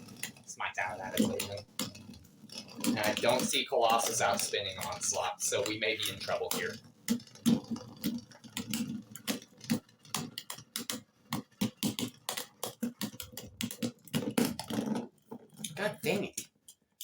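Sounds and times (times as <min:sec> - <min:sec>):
spinning tops clacking together: 0:00.0 - 0:07.6.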